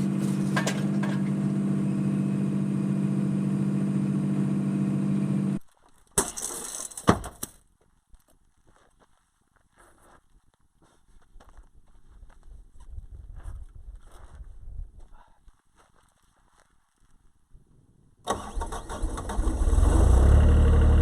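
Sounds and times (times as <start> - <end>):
loader engine running: 0.0 - 5.6, 18.3 - 21.0.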